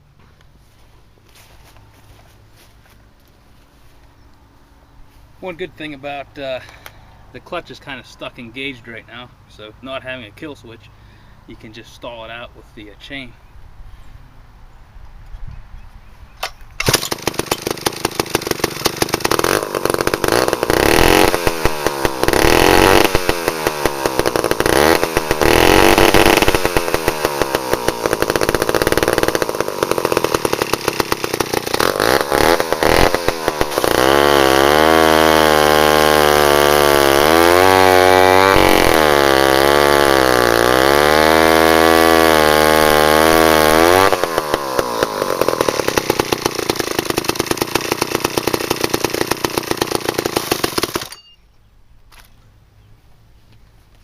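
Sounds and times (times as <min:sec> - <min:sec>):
chainsaw revving: 0:16.8 - 0:51.2.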